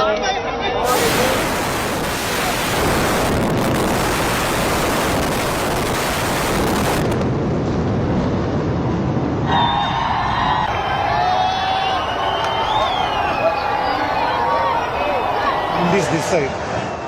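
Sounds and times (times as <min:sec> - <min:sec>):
building demolition explosion rush: 0:00.8 - 0:11.2.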